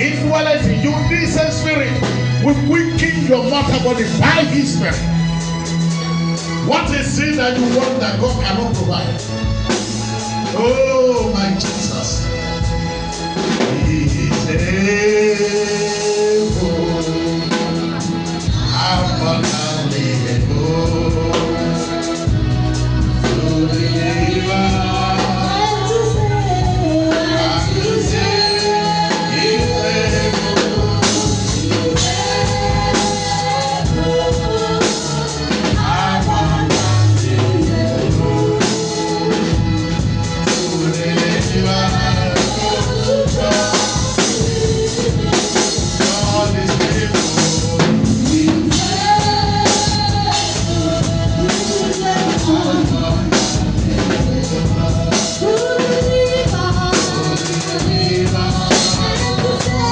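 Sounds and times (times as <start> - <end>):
bass: 0.0 - 59.9
gospel singing: 0.0 - 59.9
live drum kit: 0.0 - 59.9.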